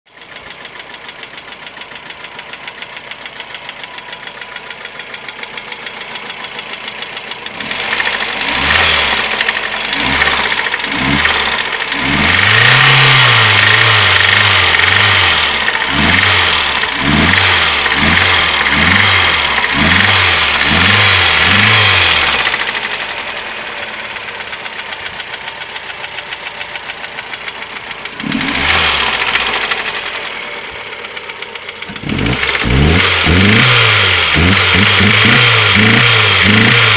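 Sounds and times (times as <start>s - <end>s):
car engine idling with knock: 0.1s - 36.9s
engine revving in quick blips: 7.5s - 23.1s, 28.1s - 30.8s, 31.8s - 36.9s.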